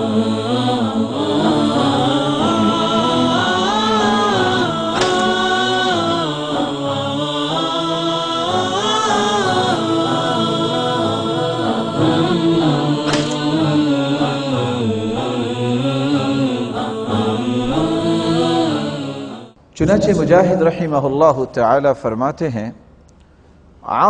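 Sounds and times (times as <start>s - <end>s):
solo voice chanting: 0.0s - 21.2s
man chanting: 12.0s - 22.7s.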